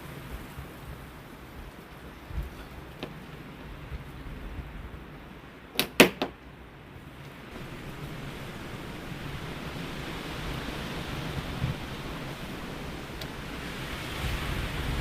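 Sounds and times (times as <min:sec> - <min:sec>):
wind noise on microphone: 0:00.0 - 0:15.0
sharp plastic clicks: 0:05.8 - 0:06.4.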